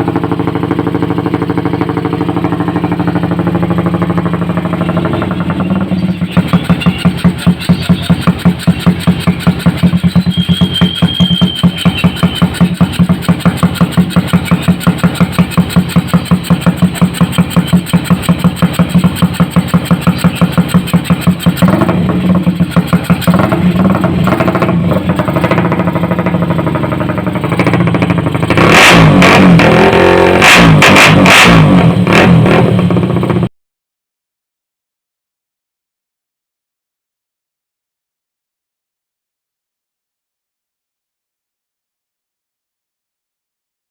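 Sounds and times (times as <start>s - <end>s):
motorcycle engine idling and revving: 0.0s - 33.5s.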